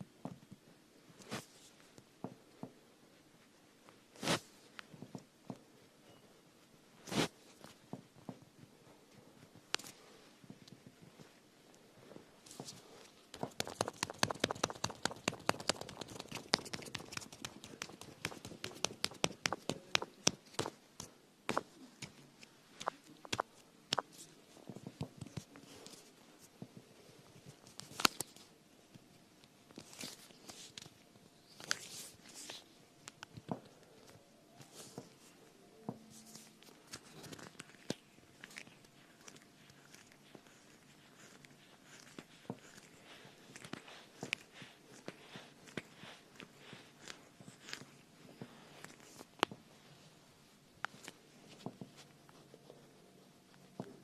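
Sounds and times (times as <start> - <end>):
soft rustles: 0.4 - 54.0
quiet clicks and taps: 12.4 - 31.0
sharp clicks and taps: 13.4 - 22.2.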